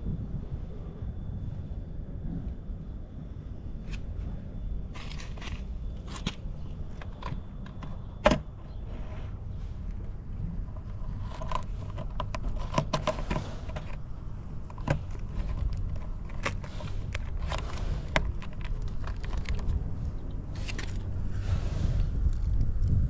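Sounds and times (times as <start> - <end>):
sharp clicks and knocks: 5.0 - 8.8, 10.7 - 14.0, 14.6 - 19.8.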